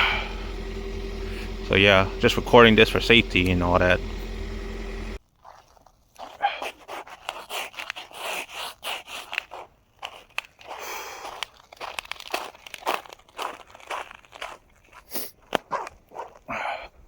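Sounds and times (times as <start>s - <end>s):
motor hum: 0.0s - 5.2s
footsteps on frozen sleet: 5.2s - 16.5s.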